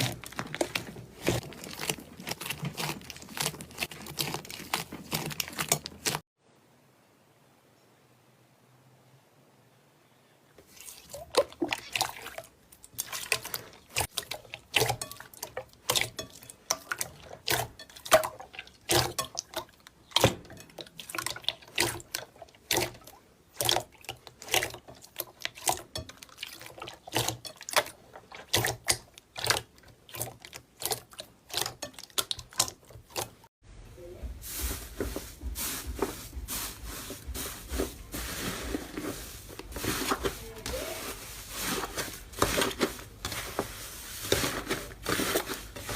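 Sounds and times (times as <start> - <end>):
slime squelching and popping: 0.0 - 6.2, 11.1 - 33.5.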